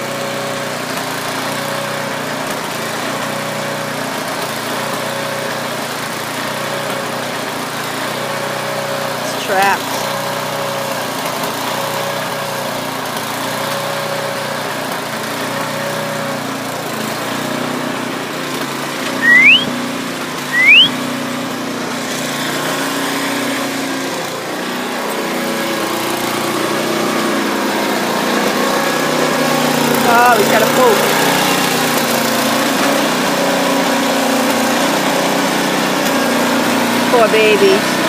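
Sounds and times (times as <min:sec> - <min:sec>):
small engine running: 0:00.0 - 0:19.7, 0:21.6 - 0:38.0
short rising whistles: 0:19.2 - 0:19.8, 0:20.5 - 0:21.0.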